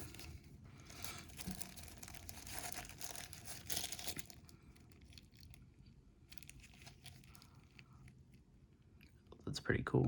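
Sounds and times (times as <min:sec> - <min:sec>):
packaging crinkling: 0:00.0 - 0:05.6, 0:06.3 - 0:08.4.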